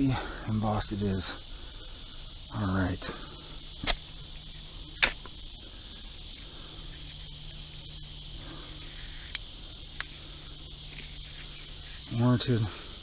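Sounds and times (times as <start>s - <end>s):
insects chirring: 0.0s - 13.0s
sharp click: 5.0s - 5.4s.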